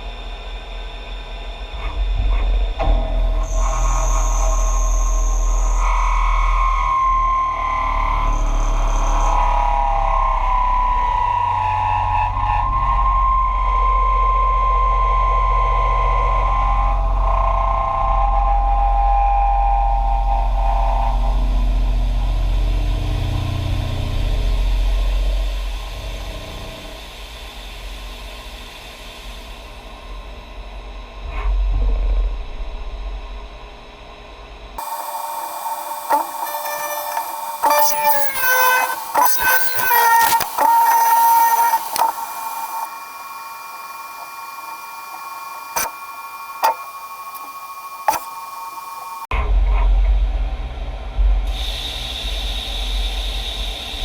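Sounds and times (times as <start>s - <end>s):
milling machine cutting steel: 34.8s - 49.2s
sharp click: 36.1s - 42.9s, 46.6s - 48.4s.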